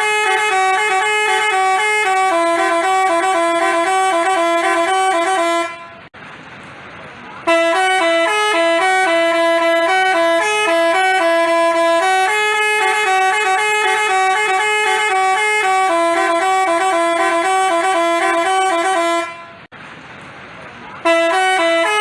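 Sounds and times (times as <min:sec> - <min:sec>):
musical bus horn tune: 0:00.0 - 0:06.1, 0:07.4 - 0:19.7, 0:21.0 - 0:22.0.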